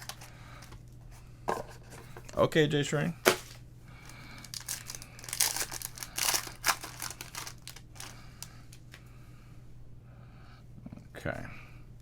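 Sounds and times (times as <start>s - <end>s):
wrapper crinkling and tearing: 3.3s - 8.8s.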